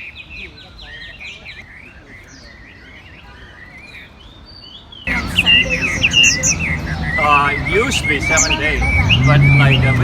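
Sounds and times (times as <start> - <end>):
songbirds singing: 0.0 - 10.0.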